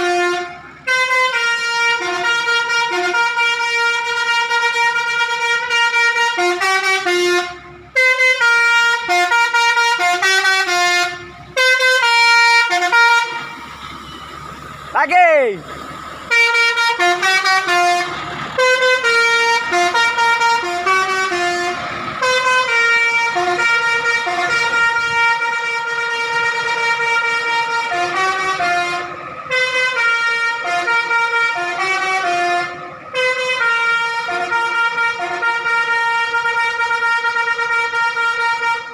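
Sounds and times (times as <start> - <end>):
bus horn playing a tune: 0.0 - 14.6, 16.3 - 38.9.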